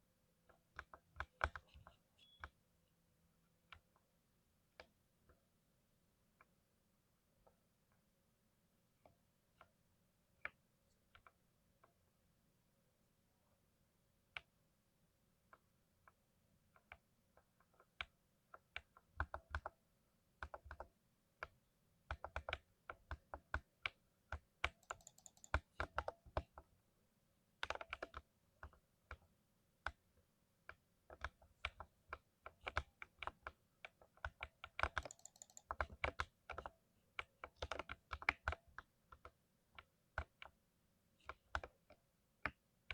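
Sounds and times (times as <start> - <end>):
mechanical keyboard typing: 24.3 - 26.5, 34.2 - 36.7, 37.5 - 38.6.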